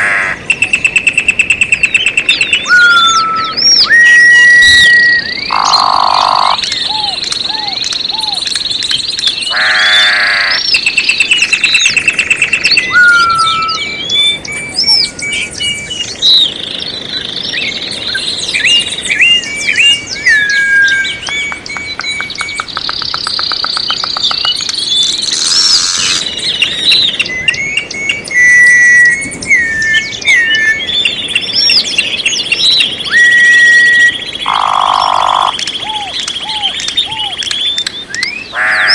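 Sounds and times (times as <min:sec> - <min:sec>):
songbirds singing and chirping: 0:00.0 - 0:38.9.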